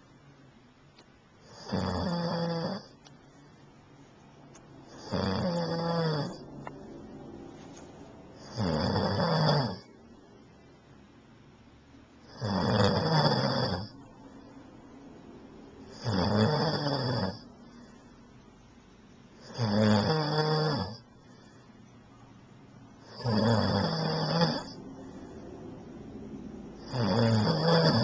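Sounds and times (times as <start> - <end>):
man snoring: 1.5 - 2.9, 4.9 - 6.5, 8.4 - 9.9, 12.2 - 14.0, 15.9 - 17.4, 19.4 - 21.0, 23.0 - 24.8, 26.8 - 28.0.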